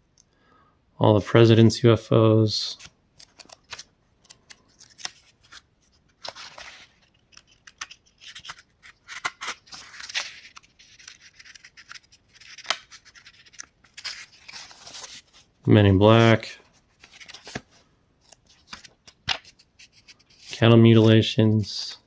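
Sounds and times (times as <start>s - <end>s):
paper pages ticking and snapping: 2.8s - 15.3s, 17.0s - 20.6s.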